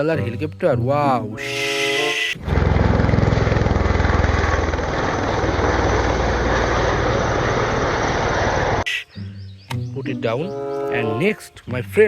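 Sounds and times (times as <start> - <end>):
helicopter rotor chopping: 2.4 - 8.9.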